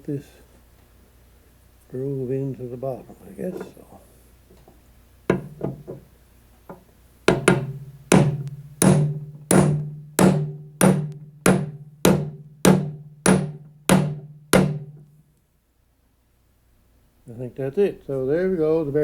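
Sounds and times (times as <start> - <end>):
hammer striking metal: 5.3 - 5.8, 7.3 - 15.0.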